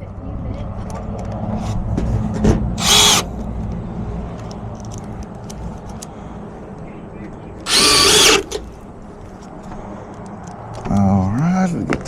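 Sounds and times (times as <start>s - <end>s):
cordless drill whining: 2.8s - 3.3s, 7.7s - 8.6s.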